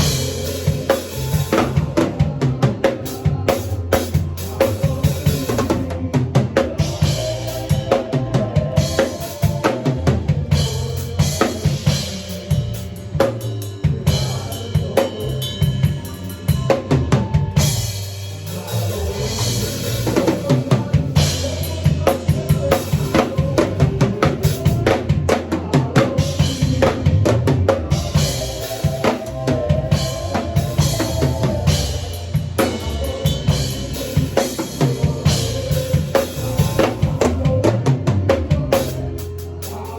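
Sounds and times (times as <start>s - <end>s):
drum kit groove: 0.0s - 39.9s.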